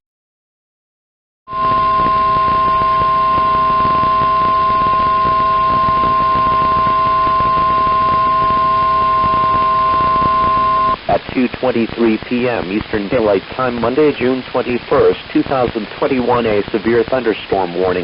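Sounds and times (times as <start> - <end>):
faint lower tone: 1.5 - 11.0
steady alarm tone: 1.5 - 11.1
radio hiss: 1.6 - 18.0.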